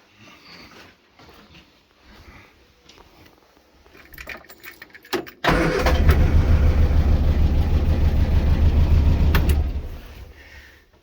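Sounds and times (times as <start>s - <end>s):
car engine starting and running: 5.4s - 10.4s.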